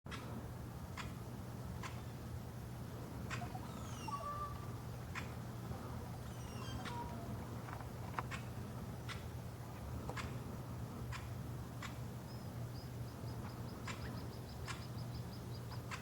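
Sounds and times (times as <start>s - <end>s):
bird trilling: 3.3s - 5.3s, 6.2s - 7.4s
woodpecker tapping on wood: 11.1s - 12.0s.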